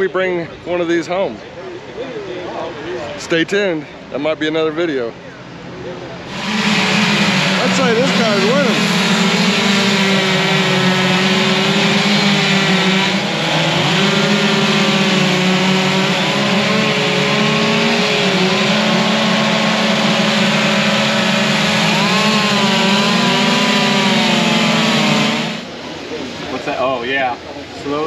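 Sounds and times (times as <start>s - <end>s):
chainsaws cutting wood: 6.3s - 25.7s.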